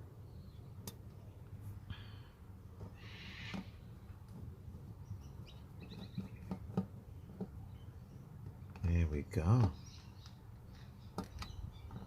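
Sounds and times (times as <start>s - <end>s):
bird chirps: 5.0s - 6.6s, 9.7s - 12.0s.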